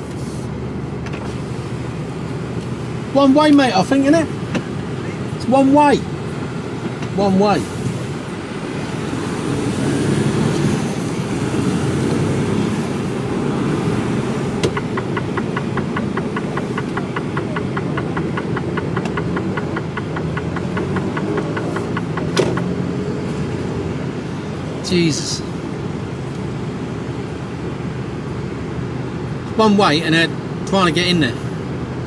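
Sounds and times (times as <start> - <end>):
truck diesel engine running: 0.0 - 32.0
fast even ticking: 14.7 - 22.4.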